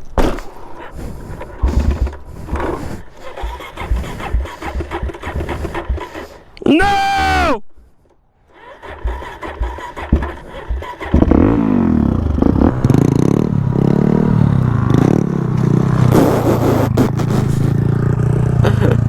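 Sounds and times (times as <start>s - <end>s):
dirt bike engine revving: 0.0s - 7.6s, 8.4s - 19.0s
knocks: 8.9s - 11.6s.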